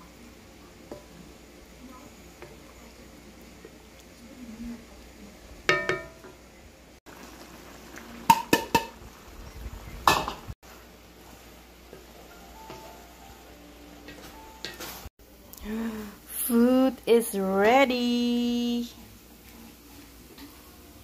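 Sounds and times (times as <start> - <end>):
kitchenware clinking: 5.7 - 6.4.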